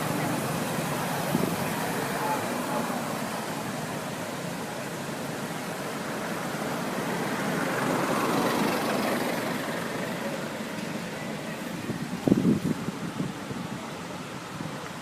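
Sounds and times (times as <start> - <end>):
motor vehicle passing: 5.9 - 11.1.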